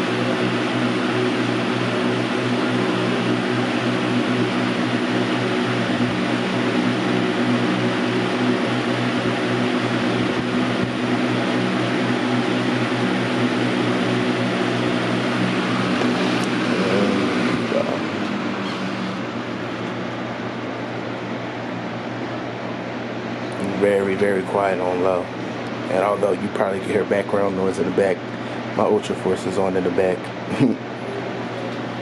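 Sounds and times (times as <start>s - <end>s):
box fan air rushing: 0.0s - 32.0s
low motor hum: 0.0s - 32.0s.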